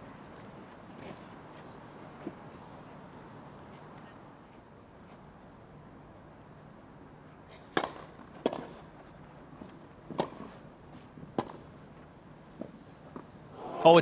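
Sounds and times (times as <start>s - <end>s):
tennis ball struck by rackets: 7.7s - 8.9s, 10.1s - 10.6s, 11.4s - 11.7s
quiet crowd: 12.8s - 14.0s.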